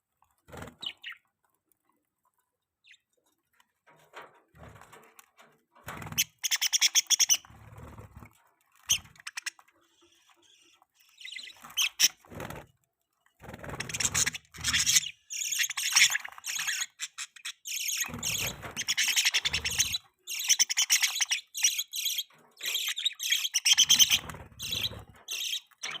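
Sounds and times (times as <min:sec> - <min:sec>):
budgerigars chirping: 0:00.8 - 0:01.2, 0:06.2 - 0:07.5, 0:08.9 - 0:12.2, 0:13.8 - 0:26.0.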